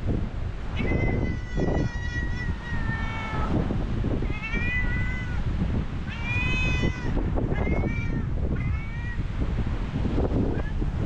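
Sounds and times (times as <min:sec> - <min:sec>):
wind rumbling on microphone: 0:00.0 - 0:11.0
cat meowing: 0:00.8 - 0:03.6, 0:04.2 - 0:09.3, 0:10.5 - 0:10.9.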